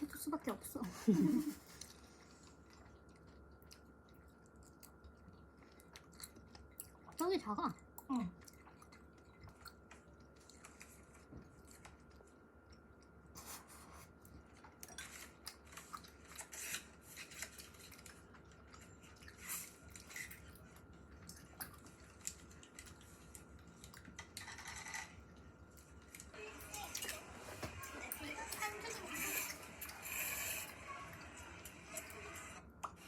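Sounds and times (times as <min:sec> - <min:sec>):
person chewing: 0:01.4 - 0:07.2, 0:07.8 - 0:26.3.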